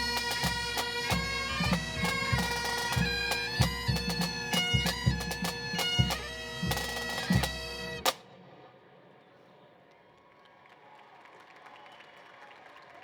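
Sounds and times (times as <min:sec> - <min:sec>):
bagpipes playing melody: 0:00.0 - 0:08.2.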